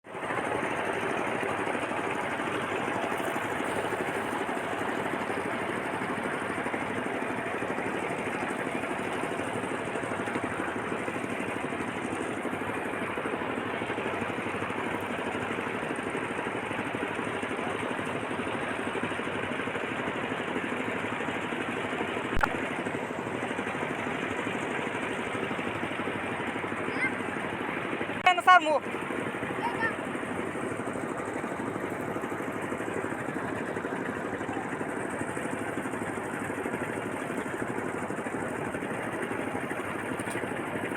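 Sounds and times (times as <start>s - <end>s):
small engine chattering: 0.1s - 40.9s
sharp click: 22.4s - 22.6s.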